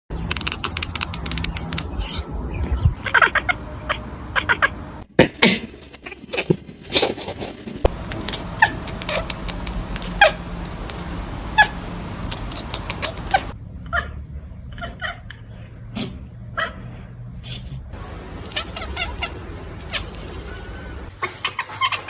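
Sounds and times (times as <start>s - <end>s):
cats meowing: 1.8s - 4.8s, 8.0s - 13.6s, 18.3s - 22.0s.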